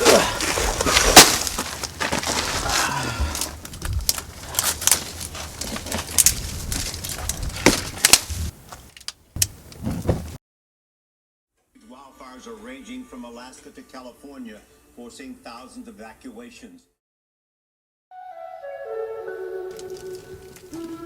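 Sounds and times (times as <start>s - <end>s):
sticks snapping and cracking: 0.0s - 9.5s, 19.7s - 21.0s.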